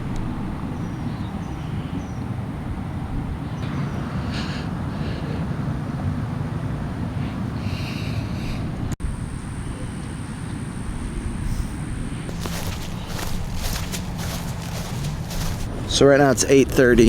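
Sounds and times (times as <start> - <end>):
wind rumbling over microphone: 0.0 - 4.2.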